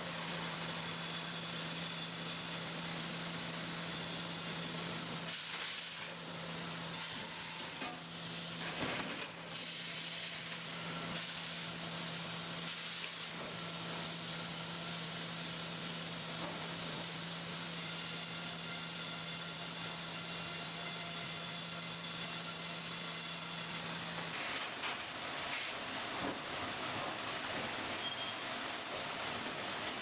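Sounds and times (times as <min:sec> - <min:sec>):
sawmill machinery hissing and humming: 0:00.0 - 0:30.0.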